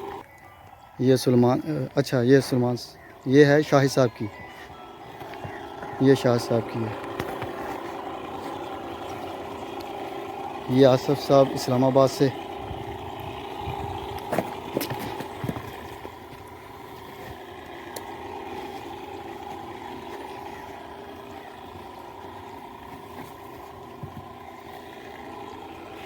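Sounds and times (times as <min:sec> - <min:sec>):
engine running: 0:00.0 - 0:26.0.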